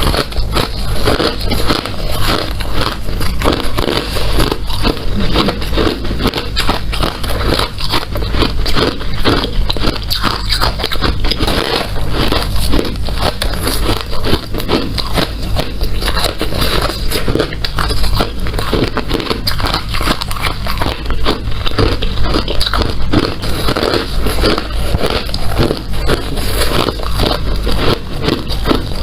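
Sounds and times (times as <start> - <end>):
ice being chewed: 0.0 - 29.0.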